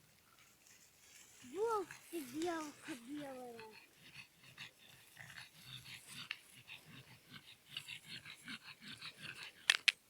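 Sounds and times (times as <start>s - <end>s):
small dog panting: 1.5s - 9.8s.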